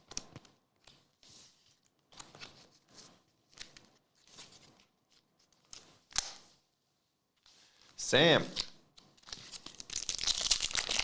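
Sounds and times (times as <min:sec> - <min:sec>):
trading cards rustling: 0:08.6 - 0:11.0.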